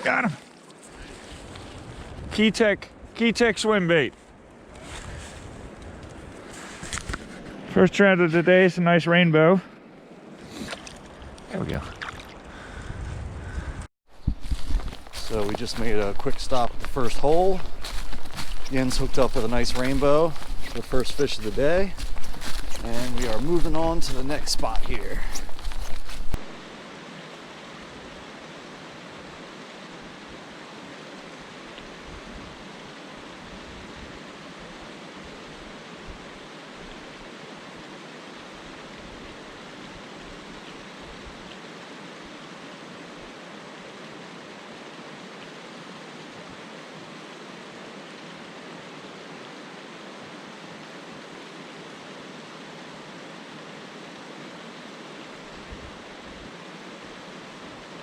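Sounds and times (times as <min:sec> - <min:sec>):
rushing river water: 0:14.5 - 0:58.0.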